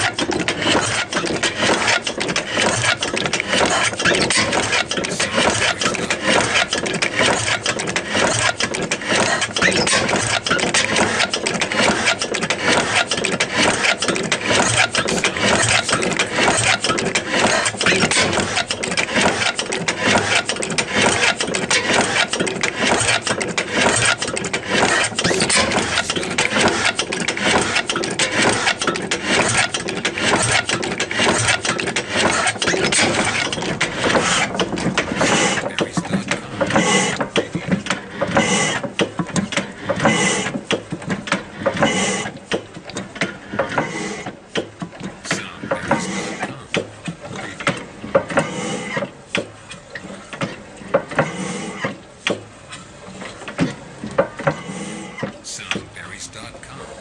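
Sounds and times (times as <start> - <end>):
steam engine running: 0.0 - 38.9, 45.2 - 47.0.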